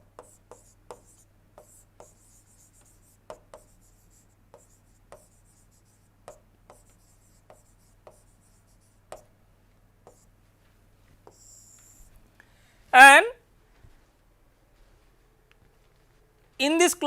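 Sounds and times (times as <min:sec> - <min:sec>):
pen tapping and scratching: 0:00.0 - 0:09.3, 0:10.0 - 0:10.3, 0:11.2 - 0:12.0
low electrical hum: 0:00.0 - 0:17.0.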